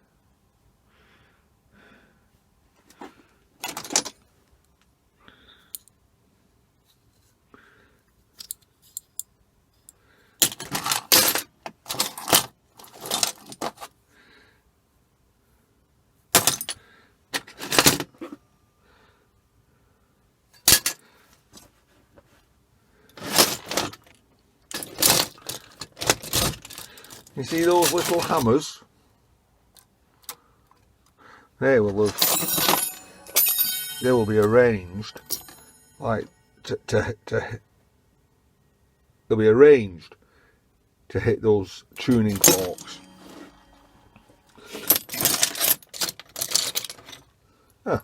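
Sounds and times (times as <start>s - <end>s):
small metal parts clinking: 32.1s - 36.3s, 42.0s - 47.3s.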